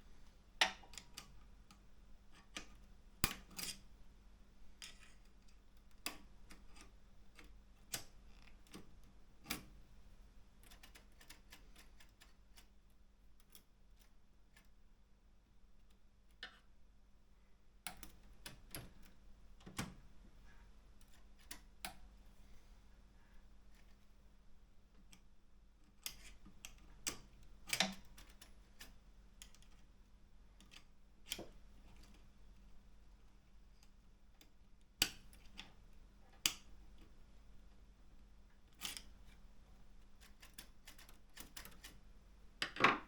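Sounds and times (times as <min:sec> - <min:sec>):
faint steady hum: 0:00.0 - 0:43.0.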